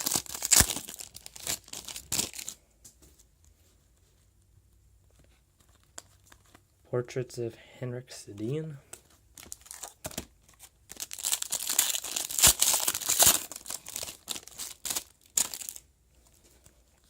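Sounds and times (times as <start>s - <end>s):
foil wrapper crinkling: 0.0s - 2.6s, 9.3s - 15.8s
cards rustling and clicking: 5.0s - 6.7s, 8.3s - 16.8s.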